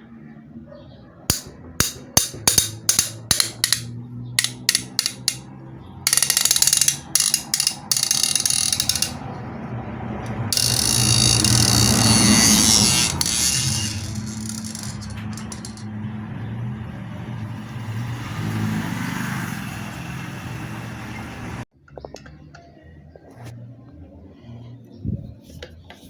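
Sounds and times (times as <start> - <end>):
ratchet wrench clicking: 1.3 - 5.5, 6.1 - 9.2, 10.3 - 15.9.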